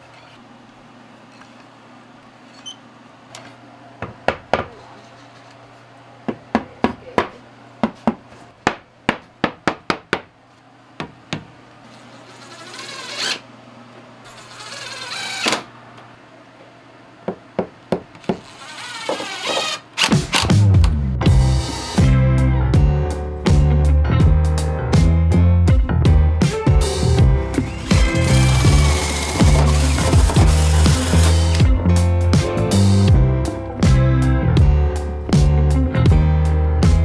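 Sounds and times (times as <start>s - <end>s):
hammering on wood: 4.0s - 4.8s, 6.3s - 10.3s, 11.0s - 11.5s, 17.3s - 18.4s
power tool whirring: 14.3s - 15.7s, 18.2s - 20.2s, 27.5s - 31.7s.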